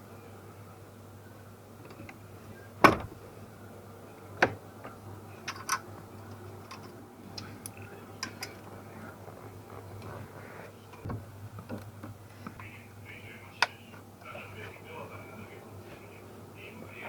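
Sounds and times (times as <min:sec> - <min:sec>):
steady low hum: 0:00.0 - 0:17.0
tools and metal parts knocking: 0:05.4 - 0:07.0.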